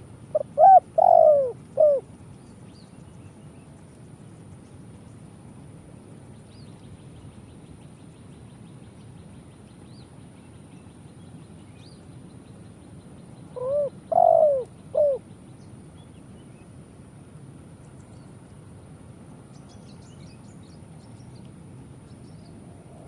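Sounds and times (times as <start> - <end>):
dove cooing: 0.4 - 2.1, 13.6 - 15.2.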